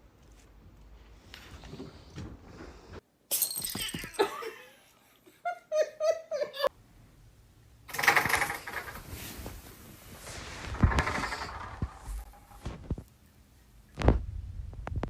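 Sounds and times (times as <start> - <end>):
person laughing: 3.8 - 6.7.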